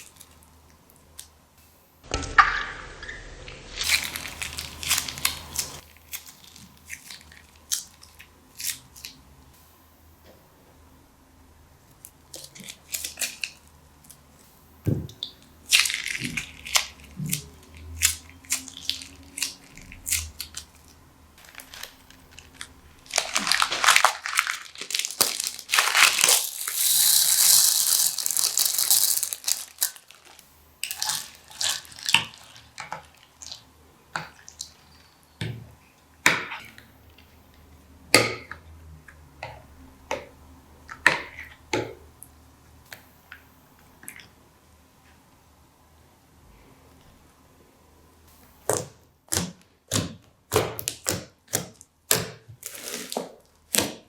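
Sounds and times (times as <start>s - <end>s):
plastic bags crinkling: 3.8s - 8.1s, 15.7s - 33.6s, 52.6s - 53.7s.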